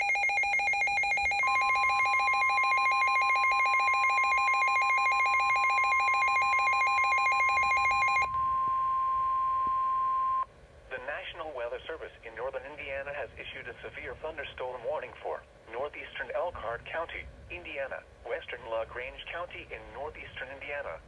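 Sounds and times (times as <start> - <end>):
pulsing trilling alarm tone: 0.0 - 10.4.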